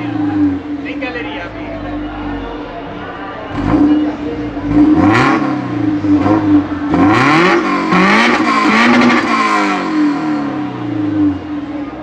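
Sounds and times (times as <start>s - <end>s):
sports car engine revving: 4.6s - 11.7s.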